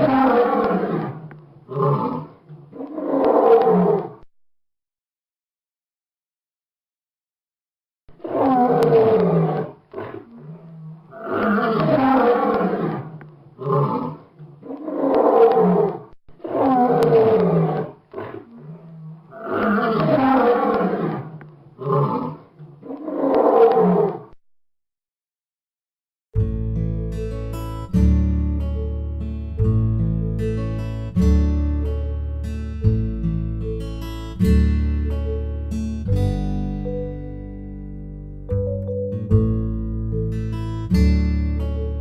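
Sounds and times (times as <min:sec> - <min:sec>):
lion roaring: 0:00.0 - 0:04.2, 0:08.2 - 0:24.4
lion grunting: 0:08.2 - 0:24.3.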